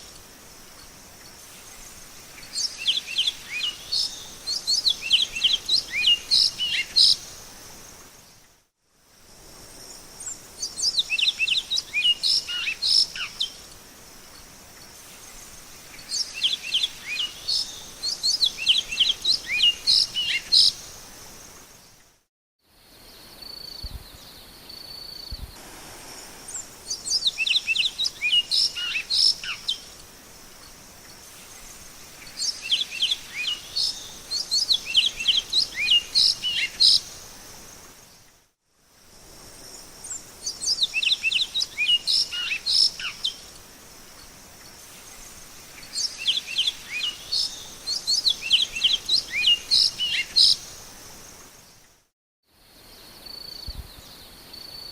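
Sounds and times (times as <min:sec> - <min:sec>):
steady high hiss: 0:00.0 - 0:54.9
finch singing whistled notes: 0:26.5 - 0:29.9, 0:32.3 - 0:37.2, 0:45.8 - 0:50.8.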